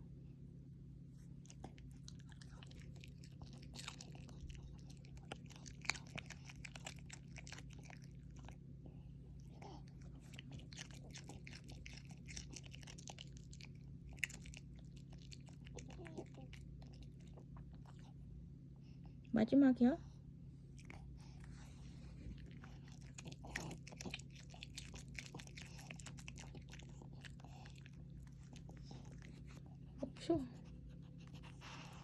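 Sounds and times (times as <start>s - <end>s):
faint low hum: 0.0s - 32.0s
dog crunching food: 1.4s - 8.6s, 9.4s - 18.1s, 20.7s - 29.6s.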